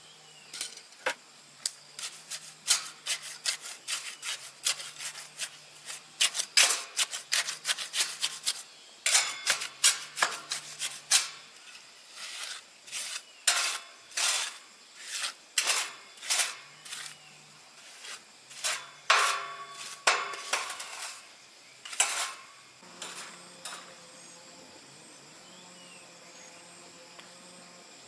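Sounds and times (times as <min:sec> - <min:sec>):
metal clinking and scraping: 0:00.6 - 0:01.2, 0:17.8 - 0:24.4.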